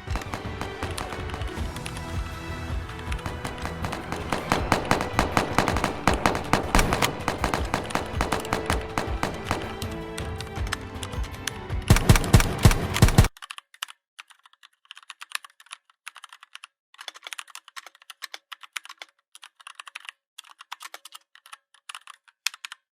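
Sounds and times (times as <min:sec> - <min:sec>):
computer keyboard typing: 0:00.0 - 0:02.3, 0:02.9 - 0:22.9.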